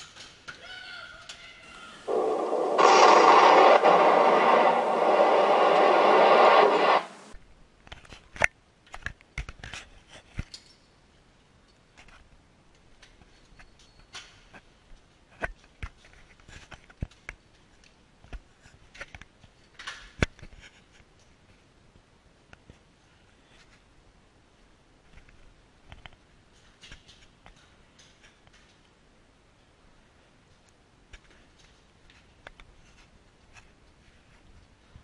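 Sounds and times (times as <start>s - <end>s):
loud dense noise: 2.0s - 7.4s.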